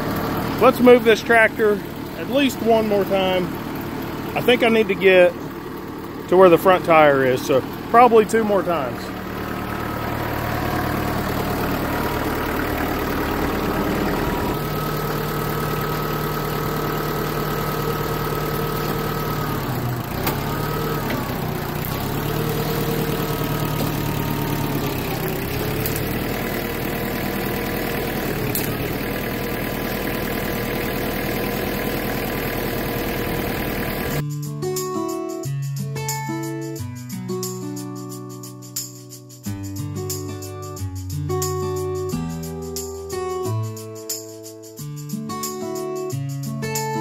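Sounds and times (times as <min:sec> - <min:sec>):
tractor diesel engine running: 0:00.0 - 0:34.2.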